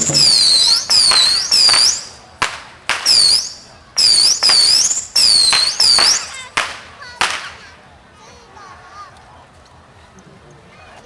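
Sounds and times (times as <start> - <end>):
shrill fireworks whistle: 0.0 - 7.5
fireworks cracks: 0.0 - 7.8.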